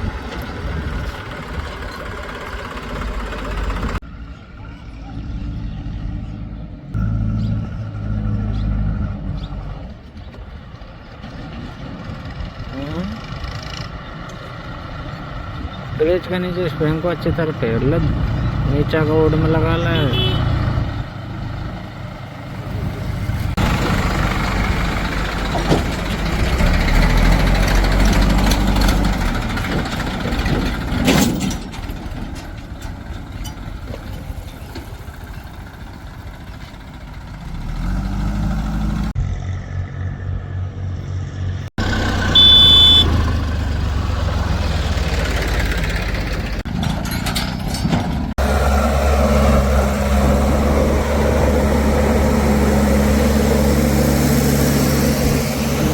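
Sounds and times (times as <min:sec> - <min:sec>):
heavy tractor engines running: 0:00.0 - 0:55.9
short high beep: 0:42.4 - 0:43.1.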